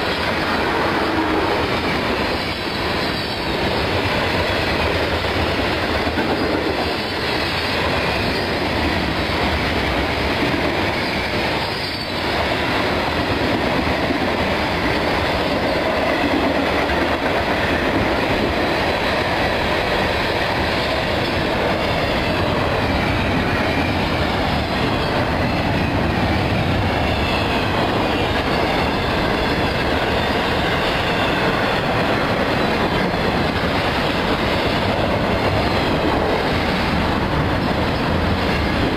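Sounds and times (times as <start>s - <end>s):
freight train rumbling past: 0.0s - 38.9s
wheel squeal: 11.0s - 12.2s.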